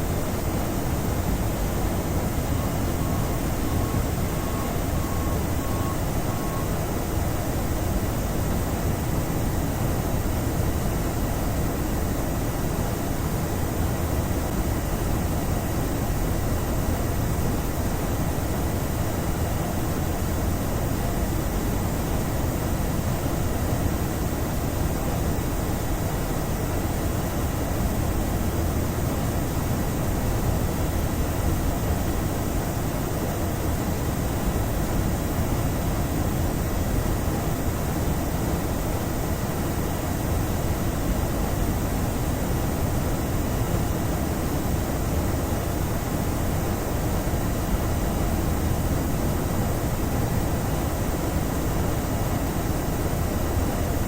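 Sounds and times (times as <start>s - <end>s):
aircraft engines and airflow rushing: 0.2s - 9.5s.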